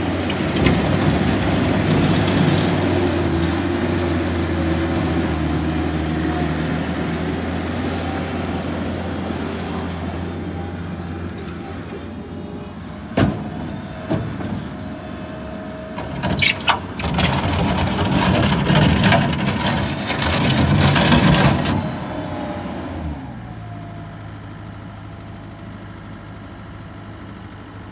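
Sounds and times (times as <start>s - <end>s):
skid steer engine idling and revving: 0.0s - 27.9s
short high squeal: 16.2s - 17.5s
sharp metal clanks: 16.3s - 17.2s.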